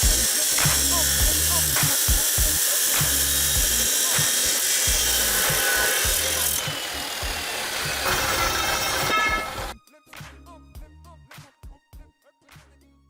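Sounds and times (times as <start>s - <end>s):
power tool hissing: 0.0s - 9.7s
background music with low beat: 0.0s - 13.0s.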